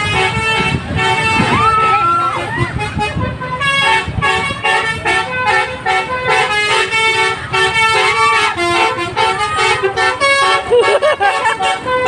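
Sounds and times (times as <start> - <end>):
bus musical horn tune: 0.0 - 12.0.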